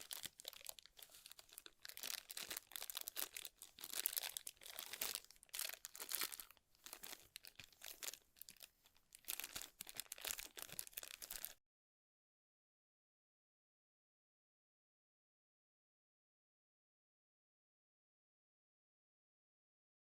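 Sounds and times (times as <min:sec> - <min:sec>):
packaging crinkling and rustling: 0:00.0 - 0:11.6.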